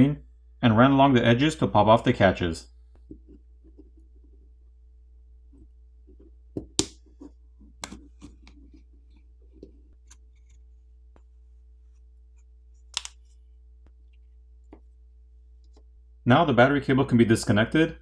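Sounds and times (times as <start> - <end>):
faint steady hum: 0.0 - 18.0
plastic catches snapping loose: 6.6 - 7.0, 13.0 - 13.2.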